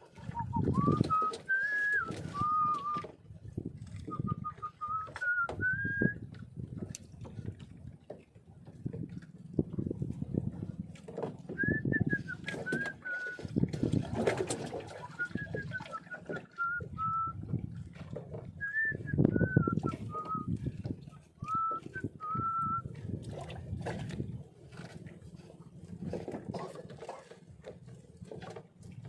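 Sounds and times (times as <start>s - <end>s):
person whistling a slow tune: 0.3s - 3.1s, 4.1s - 6.3s, 11.6s - 13.6s, 15.0s - 17.4s, 18.6s - 20.6s, 21.4s - 22.9s.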